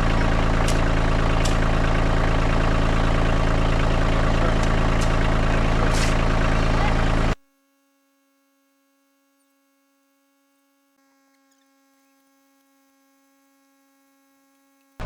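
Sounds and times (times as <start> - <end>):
tractor engine running: 0.0 - 7.4.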